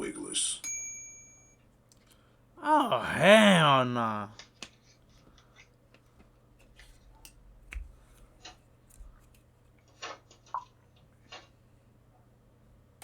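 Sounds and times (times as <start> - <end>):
faint clicks and taps: 4.4 - 11.5.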